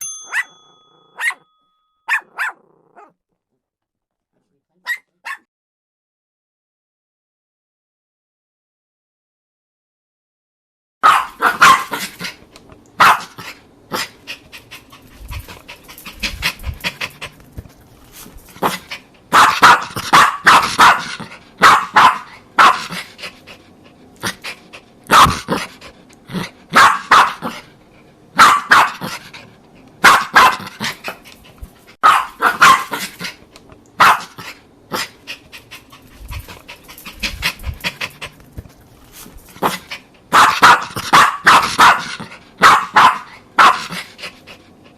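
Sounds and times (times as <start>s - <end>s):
dog barking: 0.3s - 0.5s, 1.1s - 1.4s, 2.1s - 3.1s, 4.8s - 5.5s, 11.0s - 12.0s, 13.0s - 13.4s, 19.3s - 22.9s, 25.1s - 25.5s, 26.7s - 27.6s, 28.4s - 29.1s, 30.0s - 30.8s, 32.0s - 33.0s, 34.0s - 34.4s, 40.3s - 43.9s.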